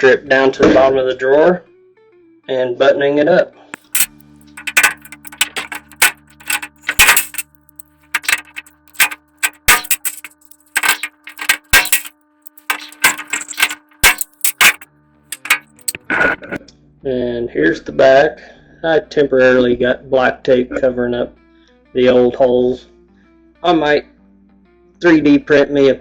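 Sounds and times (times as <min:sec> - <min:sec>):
rivet gun clicking and clanking: 0:03.8 - 0:14.8, 0:15.4 - 0:16.0.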